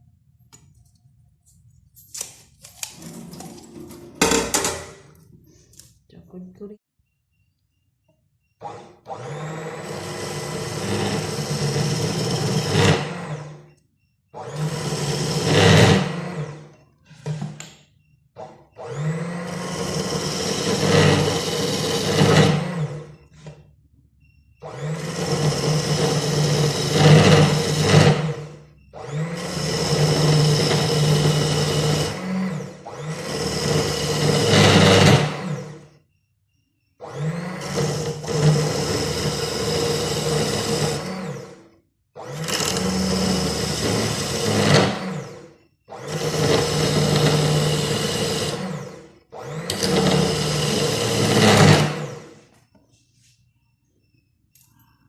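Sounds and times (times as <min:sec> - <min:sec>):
blender motor running: 0:08.6 - 0:17.6, 0:18.4 - 0:23.6, 0:24.6 - 0:36.0, 0:37.0 - 0:52.5.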